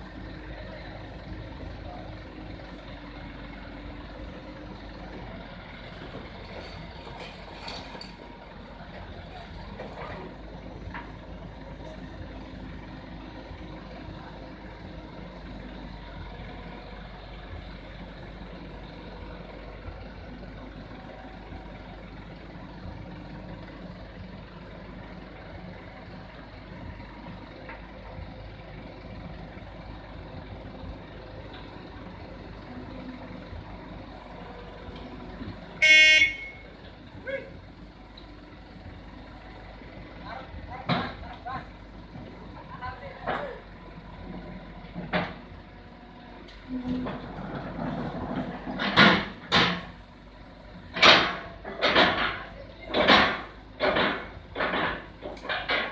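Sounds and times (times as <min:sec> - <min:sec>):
diesel engine running: 0:00.0 - 0:55.9
vehicle horn toot: 0:35.8 - 0:36.7.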